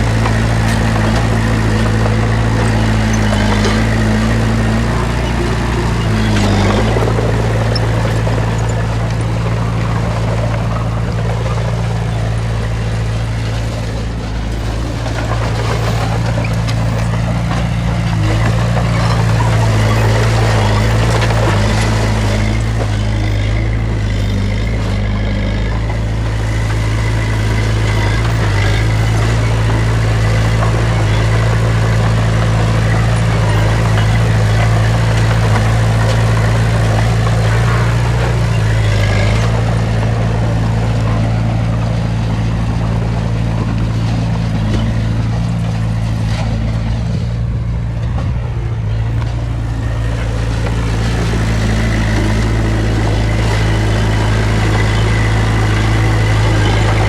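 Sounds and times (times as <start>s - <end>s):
diesel earthmoving machinery running: 0.0s - 57.0s.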